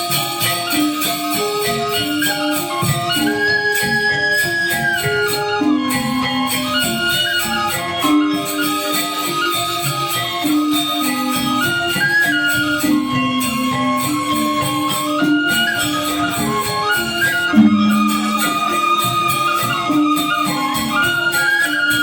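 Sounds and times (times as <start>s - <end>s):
gamelan ensemble with gong-chimes: 17.2s - 22.0s.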